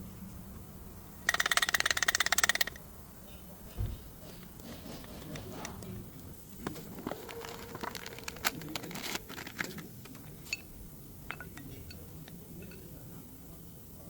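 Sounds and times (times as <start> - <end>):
faint steady hum: 0.0 - 14.0
tools and parts clicking: 1.3 - 2.8, 11.3 - 12.8.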